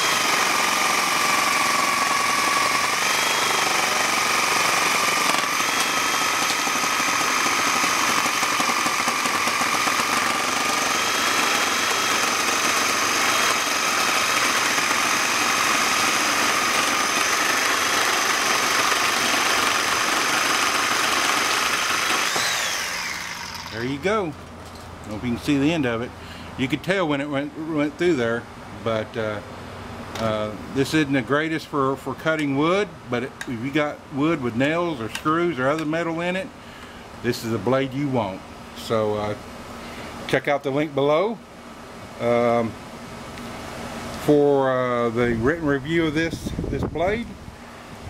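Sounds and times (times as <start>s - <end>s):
reciprocating saw cutting timber: 0.0s - 24.2s.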